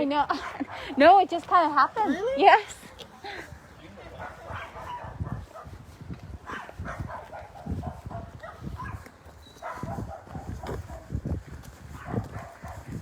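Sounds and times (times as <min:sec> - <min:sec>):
dog barking: 0:04.2 - 0:05.8, 0:06.5 - 0:11.1, 0:12.0 - 0:13.0.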